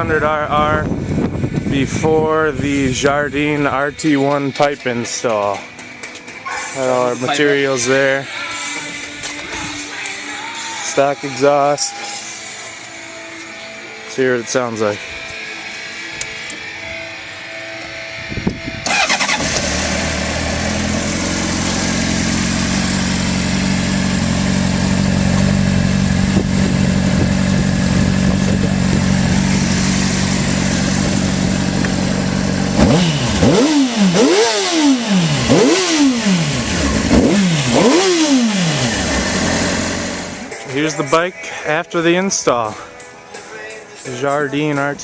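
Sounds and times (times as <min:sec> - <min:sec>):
motorcycle engine revving: 0:18.7 - 0:40.6
motorcycle engine idling: 0:18.9 - 0:40.6.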